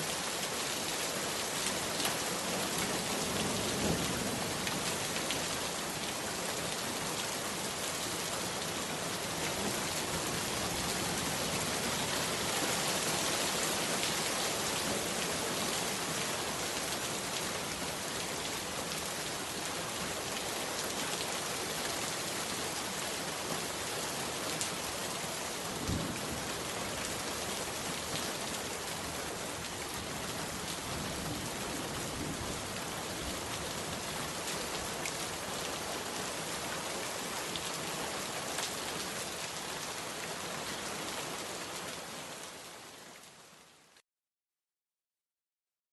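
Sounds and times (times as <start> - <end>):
steady rainfall: 0.0 - 44.0.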